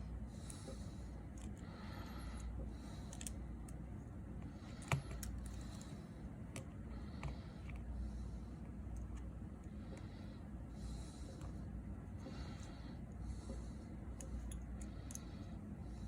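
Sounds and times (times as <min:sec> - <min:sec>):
steady low hum: 0:00.0 - 0:16.0
small clicks and taps of tools: 0:03.1 - 0:03.8, 0:04.7 - 0:05.9.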